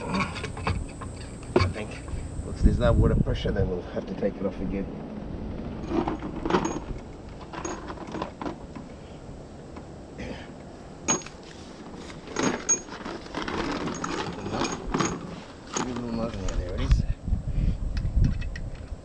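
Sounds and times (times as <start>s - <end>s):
tools clinking on metal parts: 0.0s - 2.1s, 5.8s - 8.5s, 11.1s - 11.4s, 12.3s - 16.9s.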